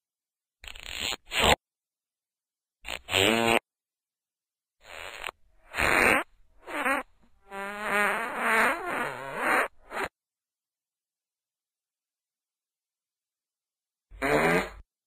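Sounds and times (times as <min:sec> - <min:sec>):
farts: 0:00.6 - 0:01.6, 0:02.9 - 0:03.6, 0:04.8 - 0:10.1, 0:14.2 - 0:14.9.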